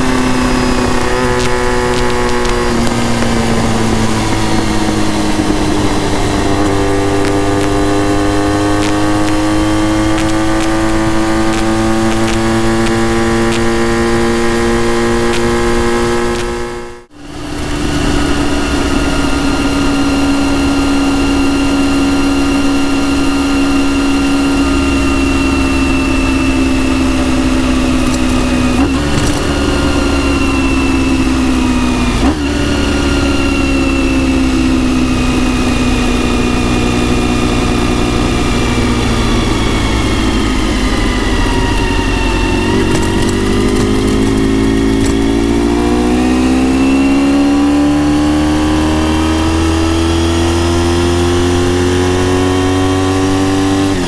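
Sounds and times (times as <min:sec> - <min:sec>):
motorcycle engine running: 0:00.0 - 0:54.0.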